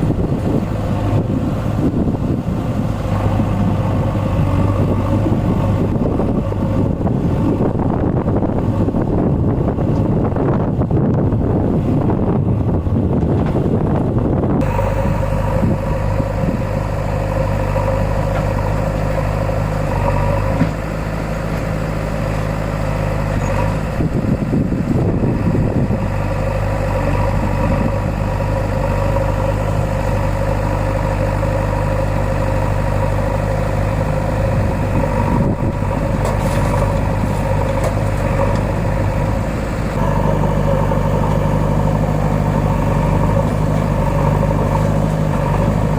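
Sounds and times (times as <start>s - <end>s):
wind gust on microphone: 0.0s - 18.1s, 23.0s - 29.9s, 34.1s - 39.6s
tractor diesel engine running: 0.0s - 45.9s.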